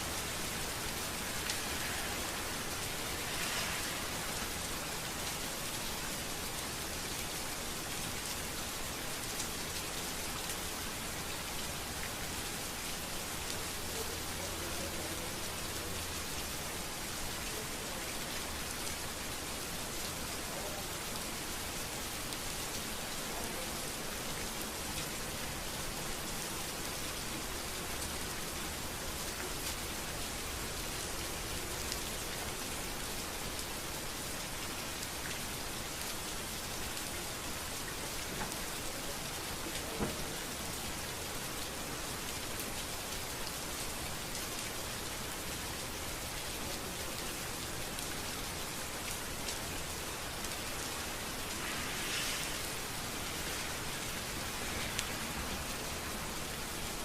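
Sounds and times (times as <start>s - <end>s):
rain on hard surfaces: 0.0s - 57.0s.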